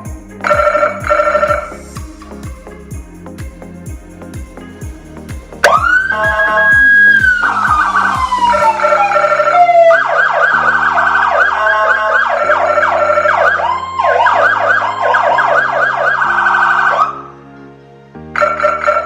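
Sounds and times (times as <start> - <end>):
backing music chords: 0.0 - 19.0
electronic siren wail and yelp: 5.6 - 17.2.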